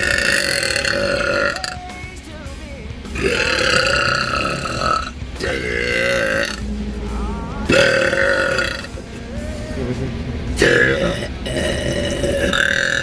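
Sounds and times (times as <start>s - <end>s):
woman burping loudly: 0.0s - 1.7s, 3.2s - 6.7s, 7.6s - 9.0s, 10.1s - 13.0s.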